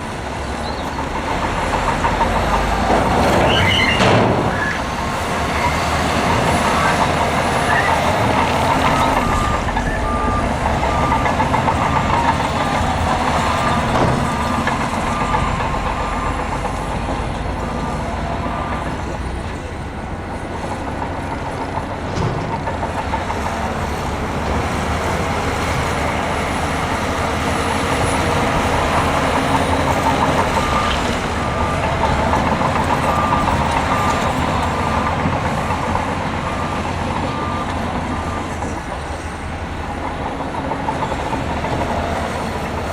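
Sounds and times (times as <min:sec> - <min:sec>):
heavy machinery diesel engines: 0:00.0 - 0:42.9
reversing alarm beeping: 0:02.4 - 0:19.5, 0:26.2 - 0:39.0.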